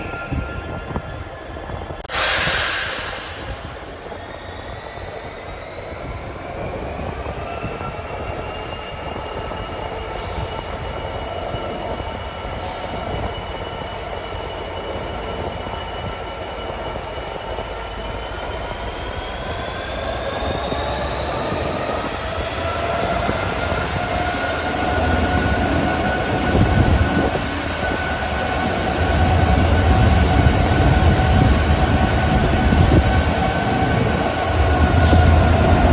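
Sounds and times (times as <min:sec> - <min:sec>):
locomotive engine powering up: 0:19.1 - 0:35.9.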